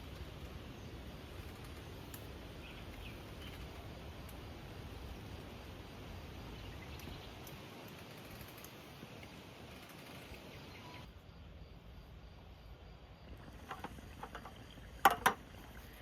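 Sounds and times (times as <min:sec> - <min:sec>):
outdoor background rush: 0:00.0 - 0:16.0
small clicks and taps: 0:13.6 - 0:15.4.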